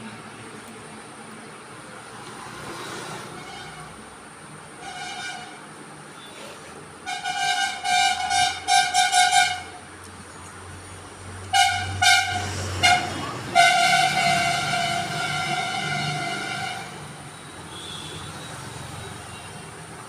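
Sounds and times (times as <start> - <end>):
horn blasts: 4.8 - 5.6, 7.0 - 9.9, 11.5 - 19.6.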